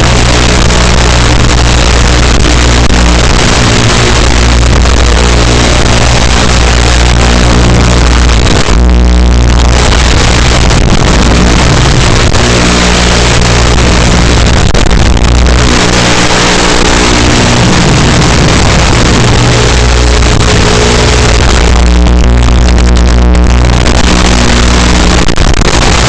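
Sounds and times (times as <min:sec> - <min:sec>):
electronic dance music: 0:03.7 - 0:26.0.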